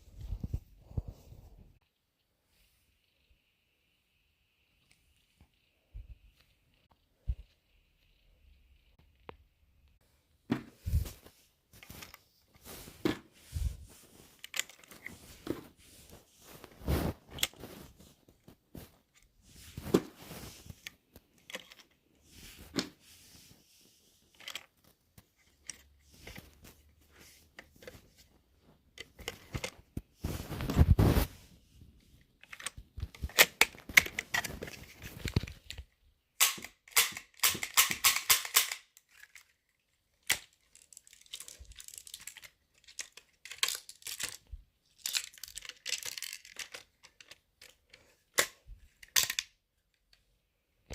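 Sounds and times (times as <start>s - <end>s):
plastic toy gun clicks and clacks: 32.4s - 35.8s, 36.4s - 50.2s.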